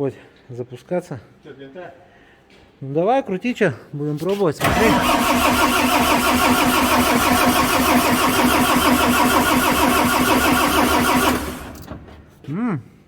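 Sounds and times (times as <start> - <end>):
diesel engine cranking on starter: 4.6 - 12.4.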